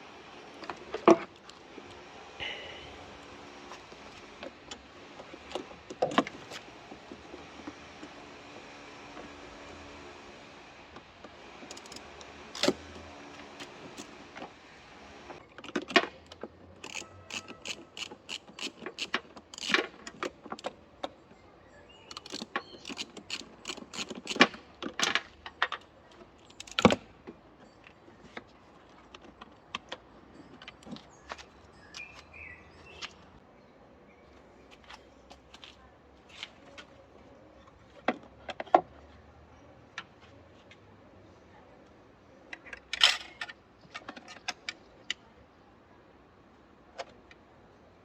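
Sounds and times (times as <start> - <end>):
metal tools clinking: 11.6 - 12.8.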